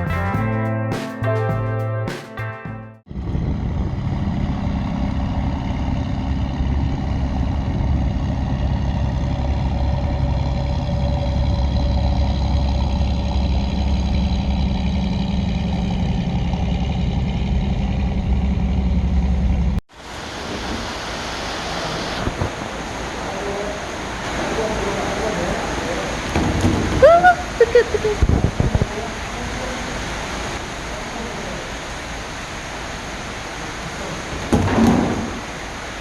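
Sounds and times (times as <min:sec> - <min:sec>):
road noise: 0:03.1 - 0:36.0
vehicle engine hum: 0:03.1 - 0:36.0
wind hiss: 0:20.0 - 0:36.0.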